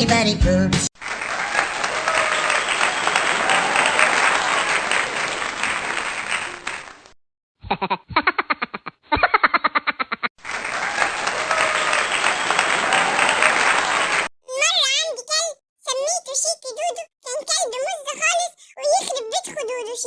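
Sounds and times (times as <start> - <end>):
crowd applause: 1.0 - 7.2, 10.4 - 14.3.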